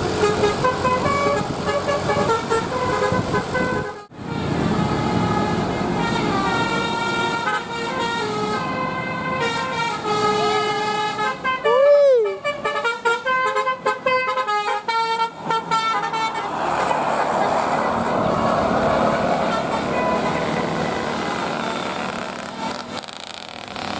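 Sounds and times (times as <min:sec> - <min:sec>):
musical air horn playing a tune: 0:00.2 - 0:16.6.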